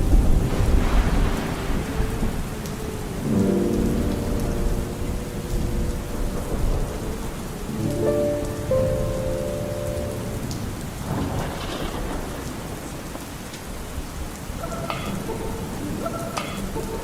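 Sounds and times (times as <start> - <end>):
low rumble of thunder: 0.0 - 17.0
steady rain: 0.0 - 17.0
soft held musical tones: 2.0 - 10.9.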